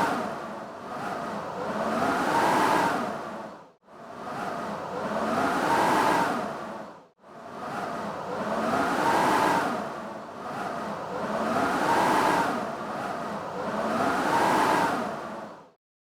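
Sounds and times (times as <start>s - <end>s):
whistling wind tone: 7.5s - 15.5s.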